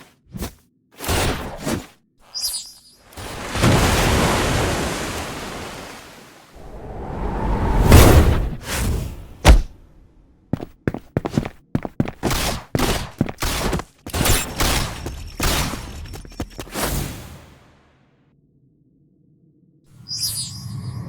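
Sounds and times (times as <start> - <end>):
sharp fight hits and thuds: 7.9 - 10.0, 12.0 - 16.8.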